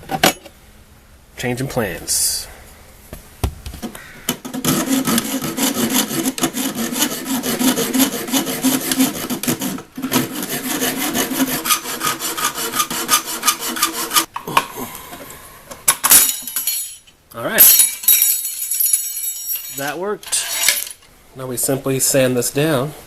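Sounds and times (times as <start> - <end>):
hacksaw cutting metal: 4.4 - 14.3.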